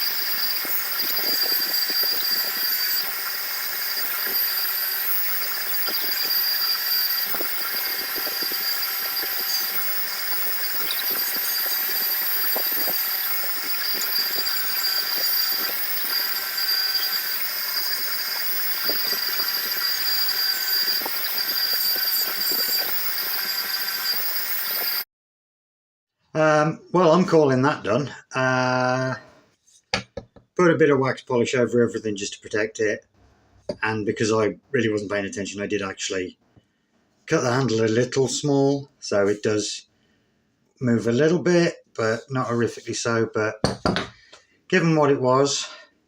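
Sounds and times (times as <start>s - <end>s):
power tool whining under load: 0.0s - 25.1s.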